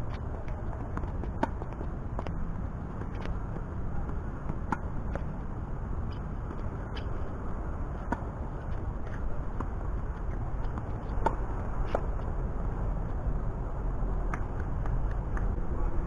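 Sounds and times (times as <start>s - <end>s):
steady low rumble: 0.0s - 16.0s
tennis ball struck by racquets: 8.0s - 8.3s, 10.3s - 12.2s.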